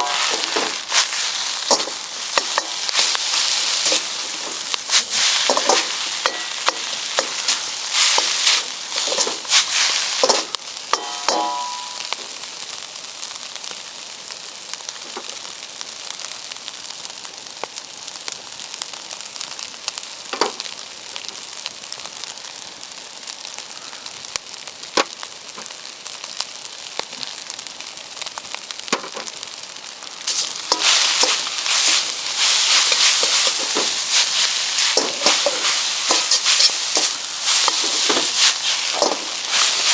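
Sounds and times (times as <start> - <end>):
stirring and scraping: 0.0 - 12.1, 30.3 - 39.9
food sizzling in a wok: 0.0 - 39.9.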